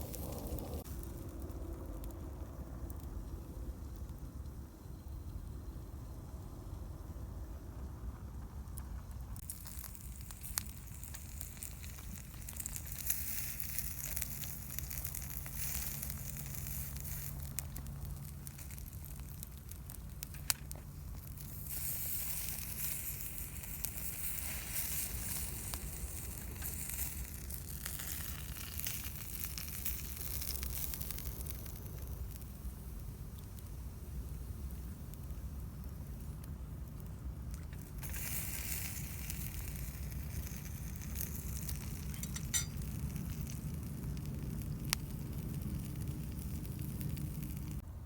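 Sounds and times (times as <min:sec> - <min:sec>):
campfire crackling: 0:00.0 - 0:47.9
fire popping: 0:00.0 - 0:47.9.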